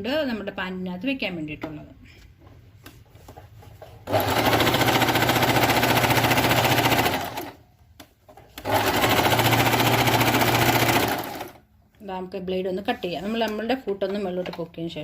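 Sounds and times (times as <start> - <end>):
electric sewing machine running: 4.0 - 7.6, 8.6 - 11.6.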